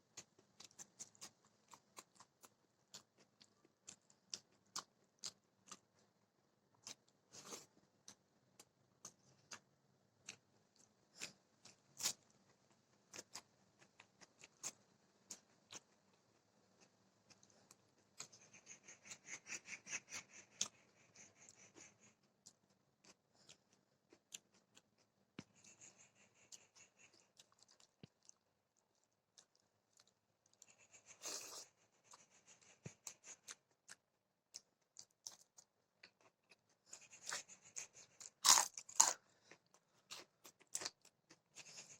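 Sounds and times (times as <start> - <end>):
crunching bites: 38.4 - 39.2.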